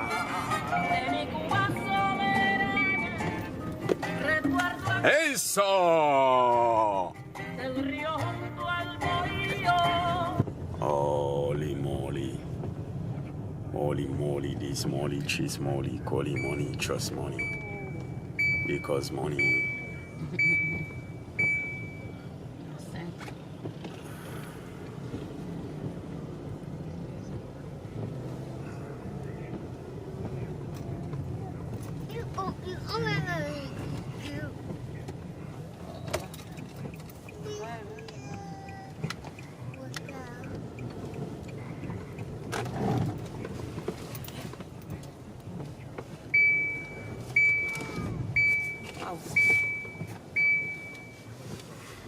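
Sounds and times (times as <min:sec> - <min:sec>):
car engine and road rumble: 0:00.0 - 0:52.0
high electronic beep: 0:02.7 - 0:03.4, 0:16.3 - 0:22.1.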